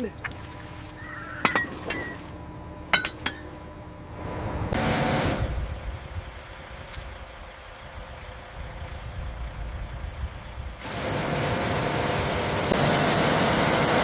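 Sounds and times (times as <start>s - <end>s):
loud hiss: 10.8s - 14.0s.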